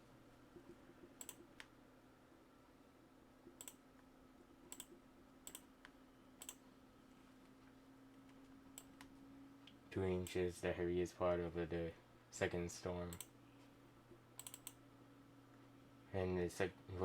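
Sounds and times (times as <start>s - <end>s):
faint low hum: 0.0s - 17.0s
faint computer clicks: 0.6s - 1.8s, 3.5s - 4.1s, 4.7s - 6.6s, 13.1s - 13.4s, 14.1s - 14.8s.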